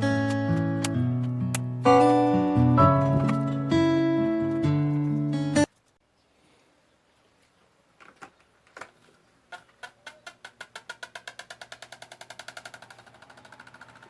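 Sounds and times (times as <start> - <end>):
fan ticking: 10.4 - 14.0.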